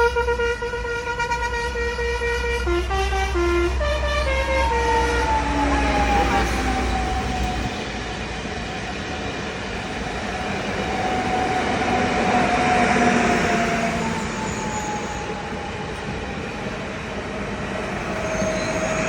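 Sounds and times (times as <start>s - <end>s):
train rumbling past: 0.0s - 19.0s.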